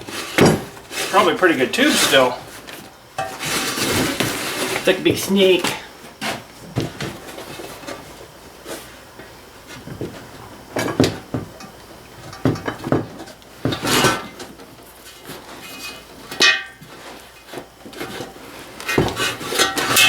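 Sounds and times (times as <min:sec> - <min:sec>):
metal clanks and knocks: 0:10.7 - 0:14.5.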